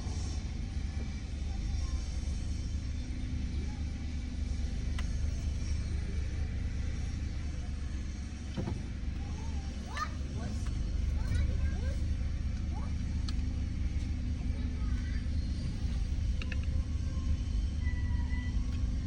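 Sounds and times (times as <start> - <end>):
car cabin rumble: 8.4 - 19.0
click: 16.4 - 16.8.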